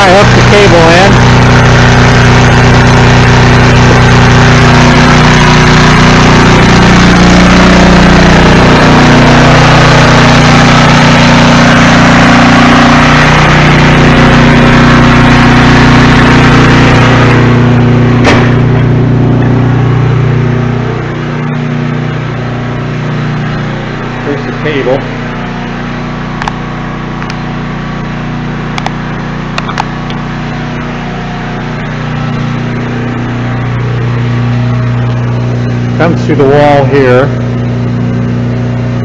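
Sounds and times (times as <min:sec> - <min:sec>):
portable generator engine running: 0:00.0 - 0:39.0
sharp click: 0:28.8 - 0:29.0, 0:29.6 - 0:30.2.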